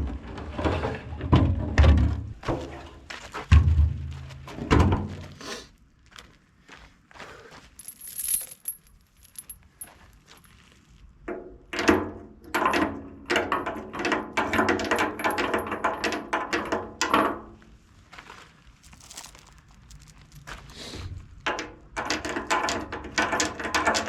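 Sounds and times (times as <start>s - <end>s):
chains clanking in metal tank: 7.8s - 9.7s.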